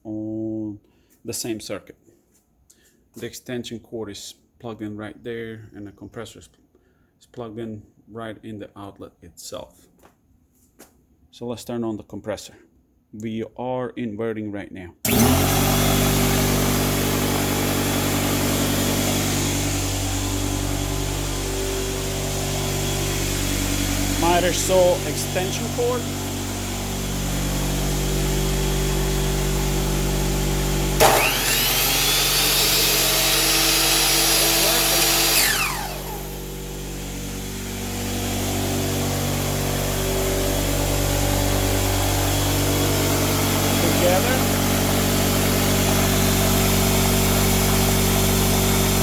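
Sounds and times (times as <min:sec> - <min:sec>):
air compressor humming: 0:15.1 - 0:49.0
saw motor spinning down: 0:15.1 - 0:49.0.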